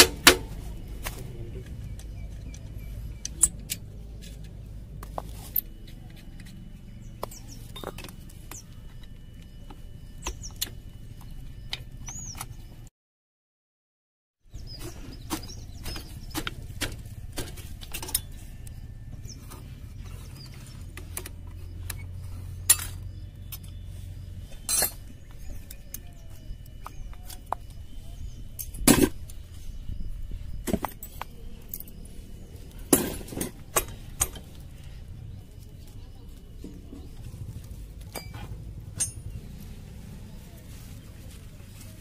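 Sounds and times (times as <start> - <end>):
steady low hum: 0.0 - 12.9, 14.5 - 42.0
metal tools clinking: 17.3 - 18.7, 20.0 - 23.8, 24.5 - 29.4, 30.6 - 35.0, 38.0 - 39.8.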